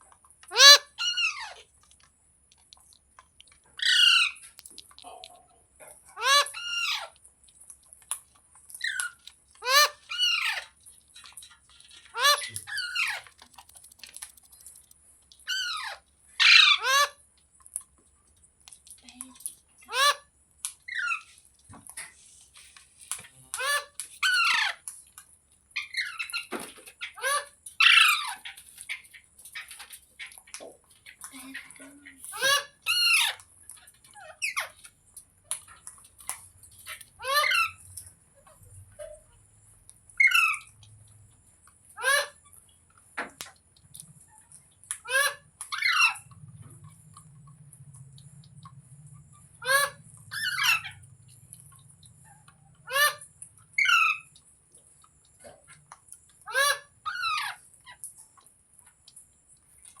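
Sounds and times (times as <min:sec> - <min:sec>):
parrot chirping: 0:00.5 - 0:01.7, 0:03.8 - 0:05.2, 0:06.0 - 0:07.2, 0:08.8 - 0:17.2, 0:19.8 - 0:21.4, 0:23.3 - 0:24.9, 0:25.7 - 0:35.0, 0:35.7 - 0:39.4, 0:40.0 - 0:41.0, 0:41.9 - 0:42.7, 0:44.2 - 0:58.4
parrot squawking: 0:00.5 - 0:01.7, 0:03.8 - 0:04.5, 0:06.1 - 0:07.2, 0:08.8 - 0:13.5, 0:15.4 - 0:17.2, 0:19.9 - 0:20.3, 0:20.9 - 0:21.3, 0:23.4 - 0:24.8, 0:25.8 - 0:29.0, 0:31.6 - 0:34.9, 0:36.8 - 0:37.8, 0:40.2 - 0:40.8, 0:41.9 - 0:42.4, 0:45.0 - 0:46.4, 0:49.4 - 0:51.1, 0:52.2 - 0:54.4, 0:56.4 - 0:58.0
faint clicks: 0:10.8 - 0:15.5.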